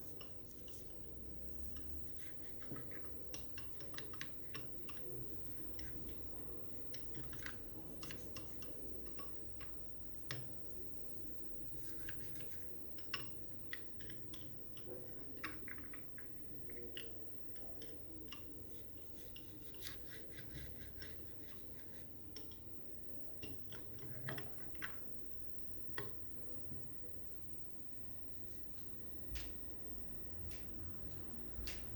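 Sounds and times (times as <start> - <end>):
toothbrush scrubbing plastic: 0.0 - 5.0, 6.9 - 9.6, 11.7 - 16.0, 17.8 - 22.7
low background hum: 0.0 - 31.9.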